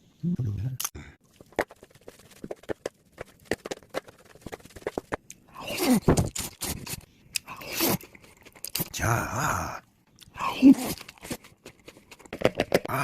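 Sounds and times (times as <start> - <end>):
person chewing: 3.6 - 9.0, 10.1 - 13.0.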